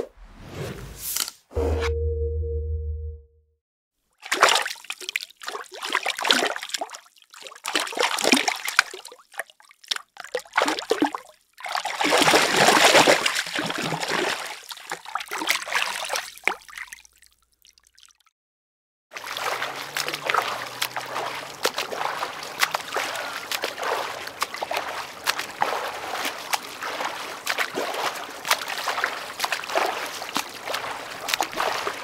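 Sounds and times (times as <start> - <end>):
swimmer splashing through water: 19.2 - 32.0.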